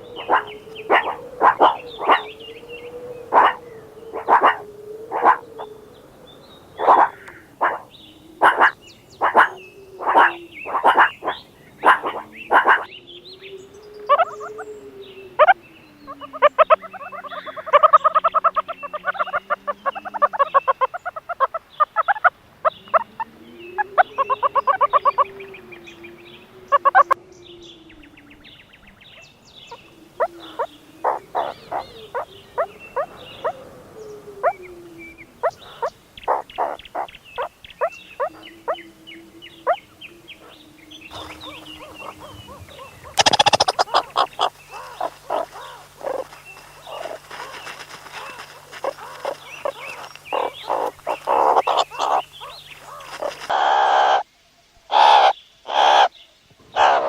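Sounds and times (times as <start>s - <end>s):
meerkats rattling trills: 0.0s - 2.3s, 3.3s - 5.7s, 6.8s - 12.9s, 30.5s - 33.2s, 35.4s - 38.8s, 41.1s - 54.2s
meerkats chirping: 0.0s - 2.4s, 3.2s - 5.7s, 6.8s - 12.9s, 14.1s - 14.7s, 15.4s - 23.2s, 29.8s - 33.6s, 35.4s - 38.8s, 39.6s - 54.2s.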